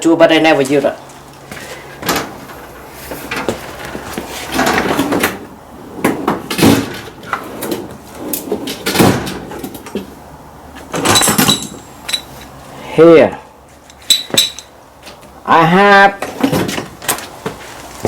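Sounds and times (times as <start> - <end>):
drawer sliding: 1.6 - 10.1
metal tools clunking: 10.8 - 12.6, 13.7 - 15.2.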